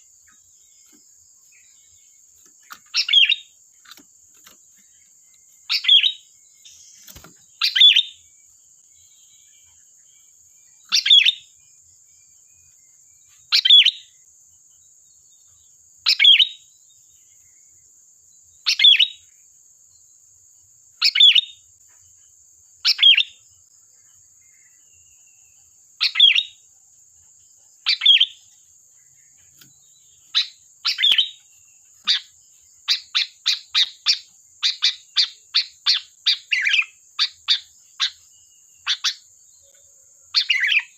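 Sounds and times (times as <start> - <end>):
faint high-pitched hiss: 0.0 - 40.9
bulbul calling: 2.6 - 4.6, 5.6 - 8.2, 10.8 - 11.5, 13.5 - 14.2, 16.1 - 16.6, 18.6 - 19.2, 21.0 - 21.6, 22.8 - 23.4, 26.0 - 26.6, 27.8 - 28.5, 30.0 - 39.3, 40.3 - 40.9.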